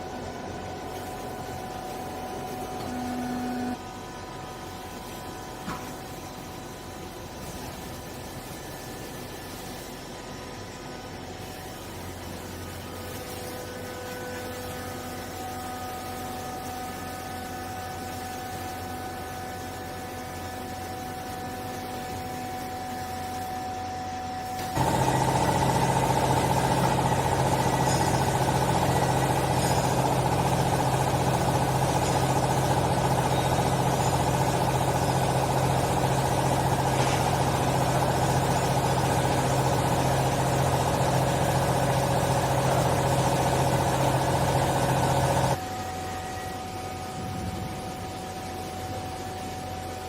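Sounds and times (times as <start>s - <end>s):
hydraulic pump motor humming: 0.0s - 4.1s, 24.6s - 45.6s.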